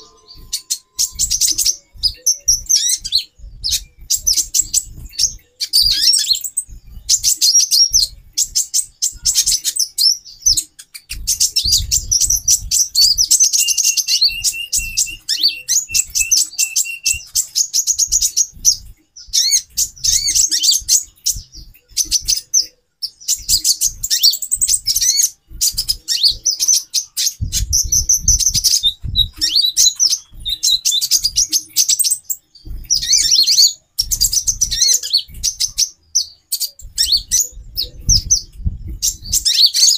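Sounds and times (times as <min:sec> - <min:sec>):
low thuds: 0:00.0 - 0:09.6, 0:10.4 - 0:15.3, 0:27.4 - 0:31.5, 0:32.6 - 0:33.3, 0:36.7 - 0:39.8
bird trill: 0:00.0 - 0:39.9
sunbirds twittering chirps: 0:00.0 - 0:39.9.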